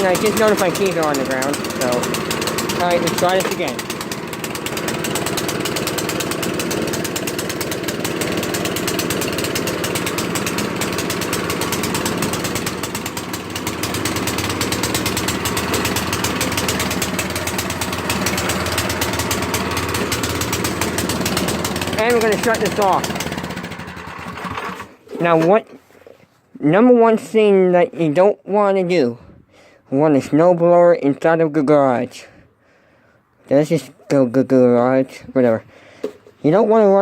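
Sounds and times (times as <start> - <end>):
snowblower engine running: 0.0 - 25.5.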